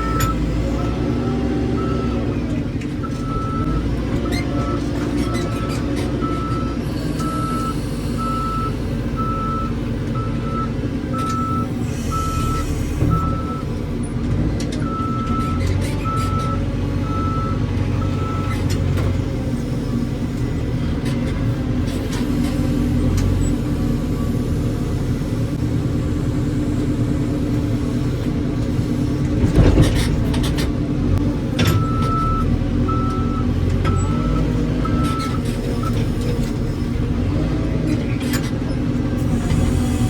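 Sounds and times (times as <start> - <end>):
diesel engine running: 0.0 - 40.0
reversing alarm beeps: 6.2 - 13.7, 31.7 - 35.4.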